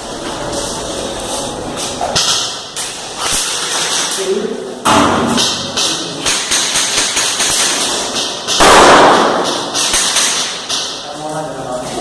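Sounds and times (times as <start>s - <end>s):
airsoft guns popping: 5.4s - 11.0s.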